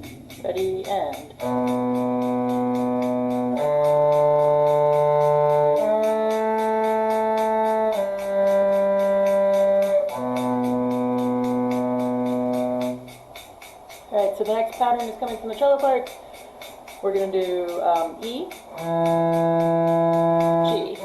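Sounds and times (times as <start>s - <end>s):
cello long held notes: 0.6s - 13.2s, 17.0s - 21.0s.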